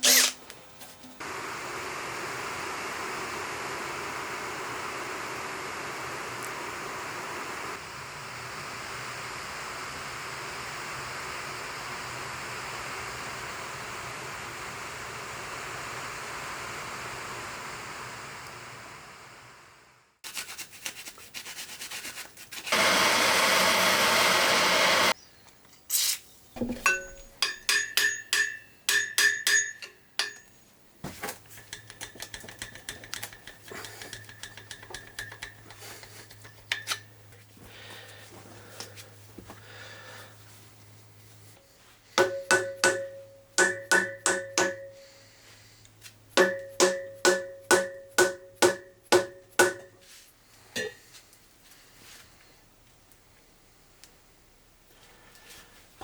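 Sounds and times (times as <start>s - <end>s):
scraping and rubbing metal: 0.0s - 0.5s
hammer strikes on metal: 26.8s - 30.5s, 42.2s - 45.0s, 46.4s - 50.0s.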